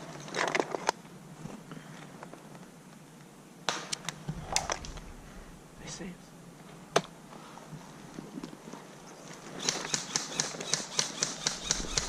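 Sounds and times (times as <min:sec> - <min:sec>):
low steady hum: 0:00.0 - 0:09.5.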